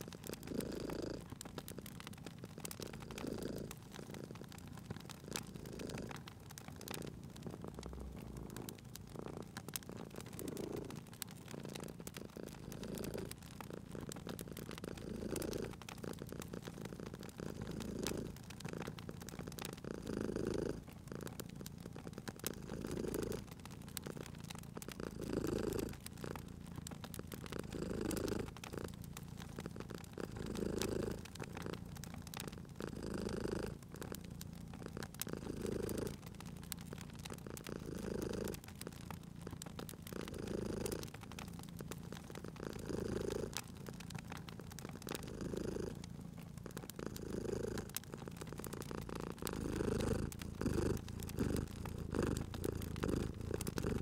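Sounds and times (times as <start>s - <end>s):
cat purring: 0.0s - 54.0s
wood fire crackling: 0.0s - 54.0s.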